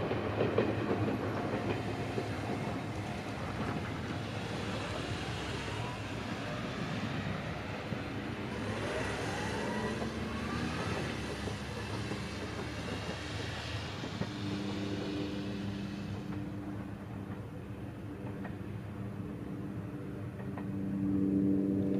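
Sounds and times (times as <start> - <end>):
electric train running rumble: 0.0 - 21.9
train motor whine rising: 0.9 - 17.5.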